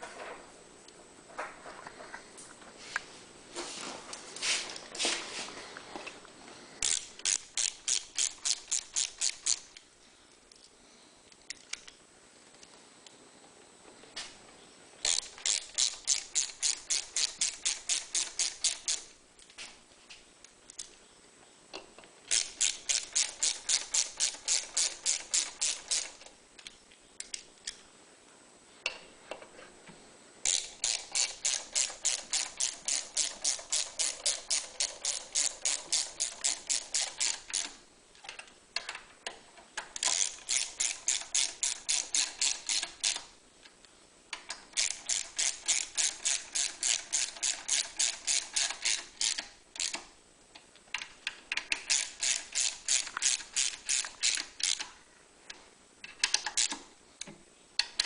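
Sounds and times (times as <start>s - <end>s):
ratchet wrench clicking: 6.8s - 9.8s, 15.1s - 19.1s, 22.3s - 26.3s, 30.5s - 37.8s, 40.0s - 43.3s, 44.7s - 50.0s, 51.5s - 54.9s, 56.2s - 56.8s.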